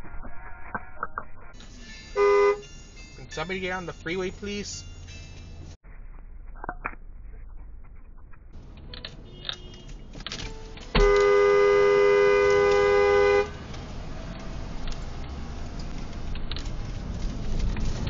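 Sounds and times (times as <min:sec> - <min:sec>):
traffic noise: 0:00.0 - 0:18.0
car horn blast: 0:02.1 - 0:02.7, 0:09.2 - 0:10.0, 0:10.9 - 0:13.7.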